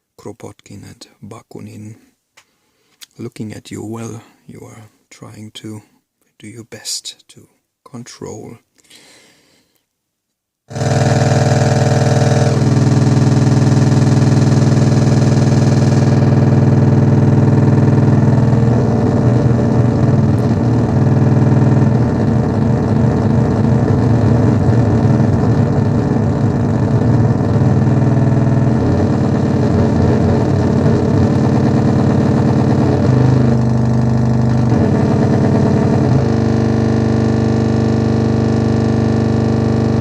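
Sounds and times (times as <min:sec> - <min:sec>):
distorted synthesizer drone: 0:10.7 - 0:40.0.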